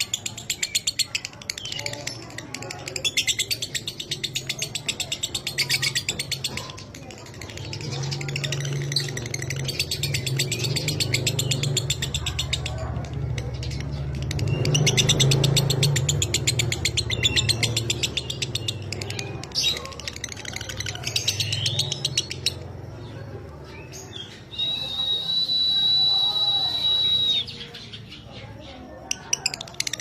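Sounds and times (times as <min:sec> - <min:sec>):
long high bird whistle: 0:24.5 - 0:27.6.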